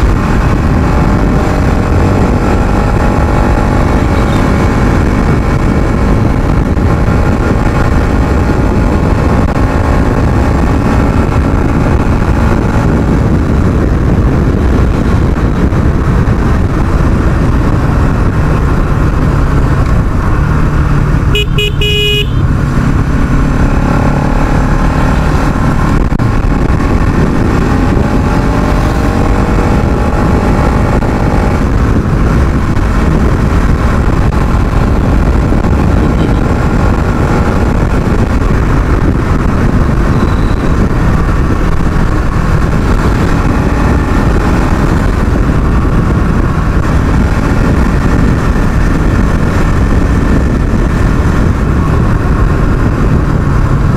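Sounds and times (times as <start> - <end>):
motorcycle engine at speed: 0.0 - 53.9
vehicle horn: 4.2 - 4.5, 21.3 - 22.5, 40.1 - 40.8.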